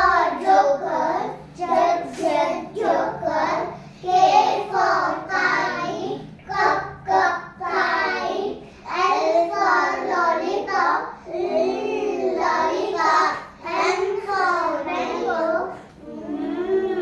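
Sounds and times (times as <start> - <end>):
children chanting in unison: 0.0 - 17.0.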